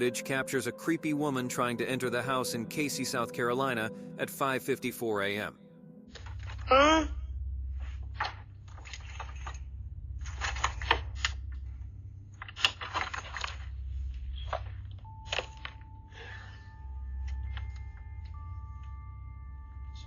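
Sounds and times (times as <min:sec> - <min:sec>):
steady high tone: 0:00.0 - 0:06.1
low hum: 0:00.0 - 0:20.0
rustling and clicking: 0:08.0 - 0:11.7, 0:12.3 - 0:15.9.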